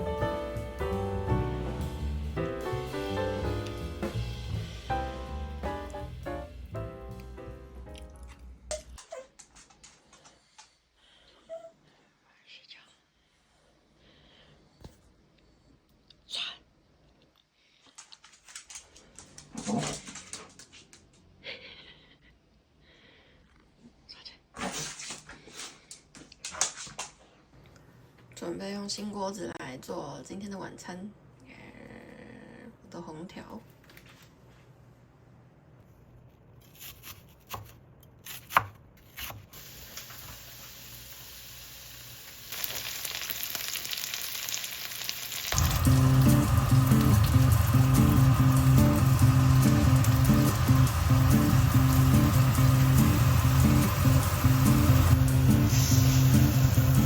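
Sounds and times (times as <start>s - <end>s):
frying pan sizzling: 0.0s - 7.2s, 39.5s - 57.0s
dog whining: 11.4s - 11.8s.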